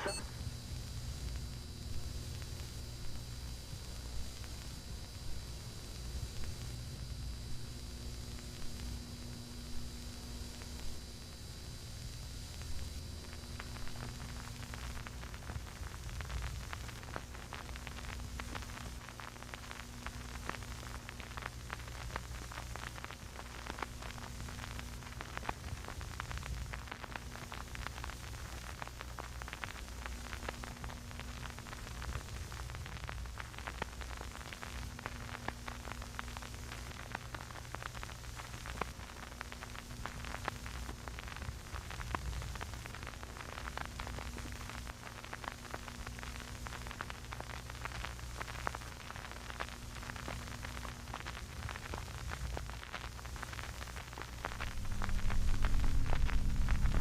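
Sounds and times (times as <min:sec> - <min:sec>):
crackling static: 0:00.0 - 0:57.0
low hum: 0:54.3 - 0:57.0.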